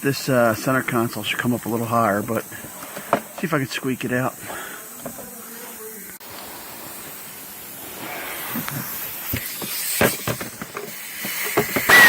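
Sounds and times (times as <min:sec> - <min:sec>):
steady hiss: 0:00.0 - 0:12.0
plastic clicks and knocks: 0:09.3 - 0:12.0.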